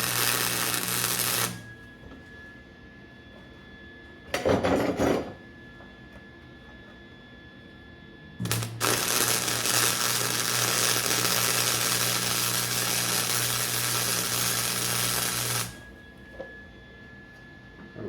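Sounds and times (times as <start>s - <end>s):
welding arc crackling hiss: 0.0s - 1.6s, 8.4s - 15.8s
low electrical hum: 0.0s - 18.0s.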